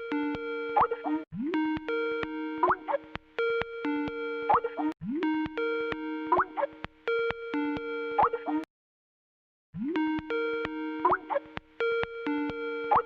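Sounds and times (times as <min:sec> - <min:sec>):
ringtone chiming tones and blips: 0:01.9 - 0:04.9, 0:05.5 - 0:08.6, 0:11.0 - 0:13.0.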